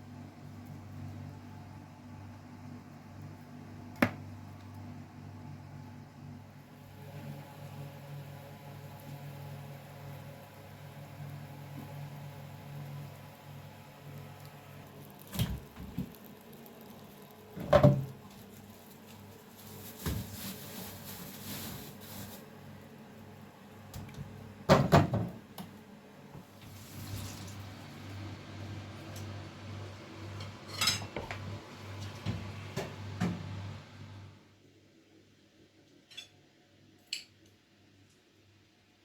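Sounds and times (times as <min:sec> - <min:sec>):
dishes and utensils clinking: 0:30.4 - 0:31.3.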